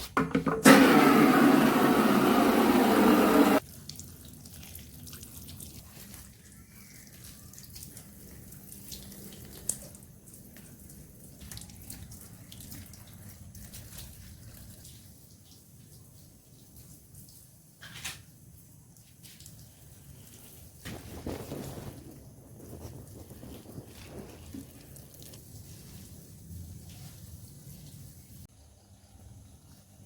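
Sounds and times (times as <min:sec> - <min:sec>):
kitchen tap running: 0:00.2 - 0:03.6
water dripping: 0:03.6 - 0:17.7, 0:22.6 - 0:27.0.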